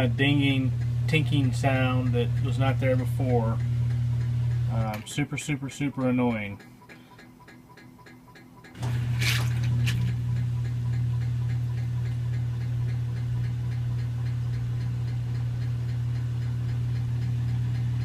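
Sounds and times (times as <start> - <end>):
low machine hum: 0.0 - 18.0
washing machine clicking: 0.0 - 18.0
water swishing: 8.8 - 10.1.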